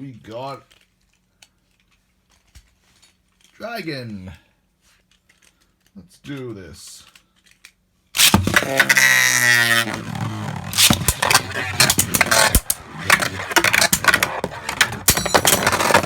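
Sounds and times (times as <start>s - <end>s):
spinning top launcher whir: 8.2s - 16.0s
spinning tops clashing: 8.2s - 16.0s.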